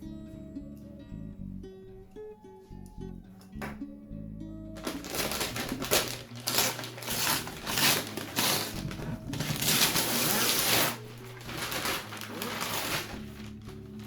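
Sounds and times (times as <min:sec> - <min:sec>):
soft background music: 0:00.0 - 0:14.0
packaging torn and crumpled: 0:04.8 - 0:14.0.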